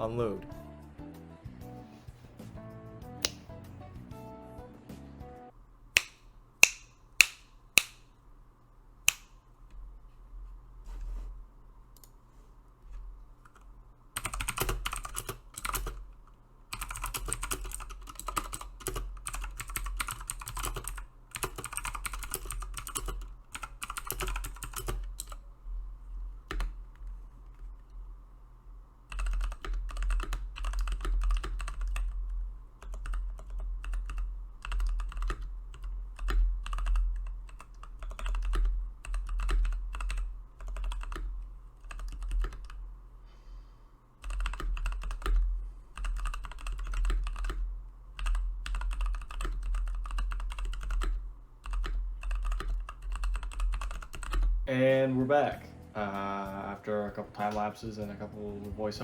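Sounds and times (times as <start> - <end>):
typing on mechanical keyboard: 14.2 - 16.0, 16.7 - 25.4, 26.5 - 26.8, 29.1 - 32.2, 32.8 - 42.8, 44.2 - 47.6, 48.2 - 54.5.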